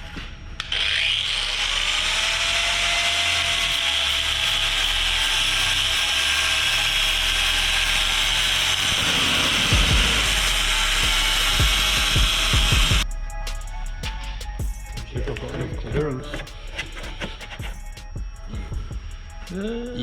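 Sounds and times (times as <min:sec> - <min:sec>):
power tool motor whining: 0:00.7 - 0:13.0.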